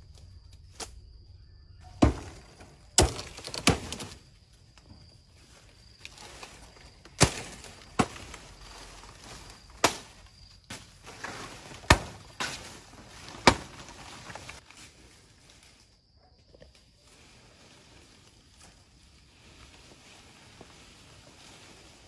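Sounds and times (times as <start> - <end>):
rustling: 1.9 - 15.9
hand tool chopping: 2.0 - 4.1, 10.7 - 12.7.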